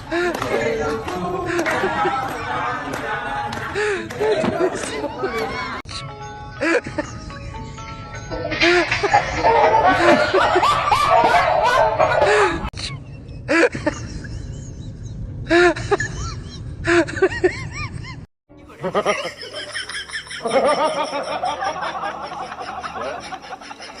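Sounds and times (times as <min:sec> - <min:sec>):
people laughing and snickering: 0:00.0 - 0:05.8, 0:08.3 - 0:24.0
music: 0:05.9 - 0:10.0.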